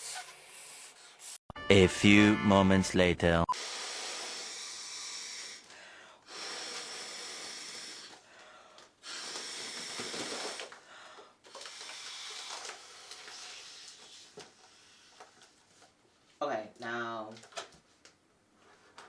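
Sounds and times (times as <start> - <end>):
person blowing through a straw: 3.5 - 5.7, 6.3 - 8.2, 9.0 - 10.7, 11.7 - 14.2.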